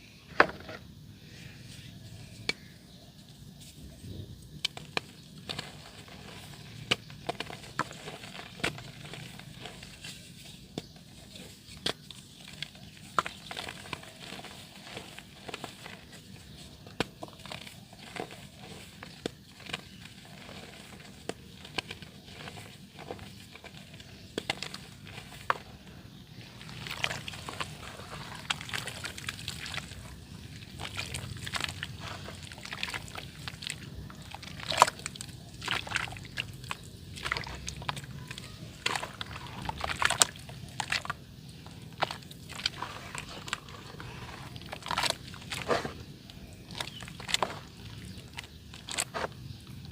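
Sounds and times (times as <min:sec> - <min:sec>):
dirt crackling into water: 0:04.4 - 0:49.9
small wet sloshes: 0:11.4 - 0:49.7.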